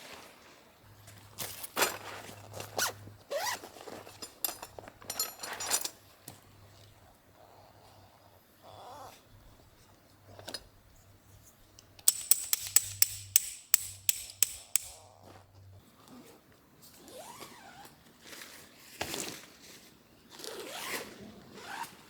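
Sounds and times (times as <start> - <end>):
sharp taps: 12.0 - 15.0.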